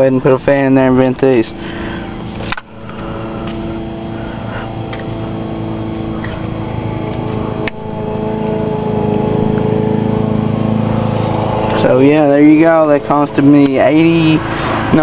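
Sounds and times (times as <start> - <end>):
car engine running: 0.0 - 15.0.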